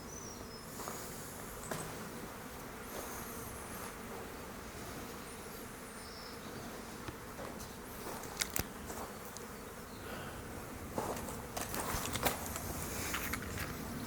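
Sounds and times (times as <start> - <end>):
flies buzzing: 0.0 - 14.0.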